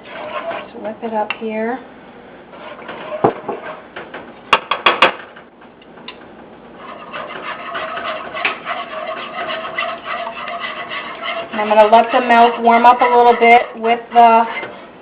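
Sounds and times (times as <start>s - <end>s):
whisk scraping in pan: 0.0s - 1.2s, 2.5s - 4.0s, 6.7s - 15.0s
whisk clinking against pan: 6.8s - 14.6s.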